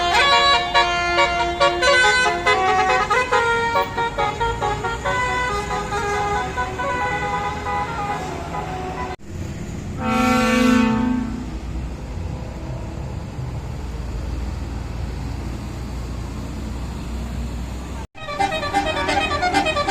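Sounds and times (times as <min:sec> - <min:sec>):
bus horn playing a tune: 0:00.0 - 0:09.2, 0:09.9 - 0:11.7, 0:18.2 - 0:19.9
held horn note: 0:10.0 - 0:11.8, 0:18.2 - 0:19.9.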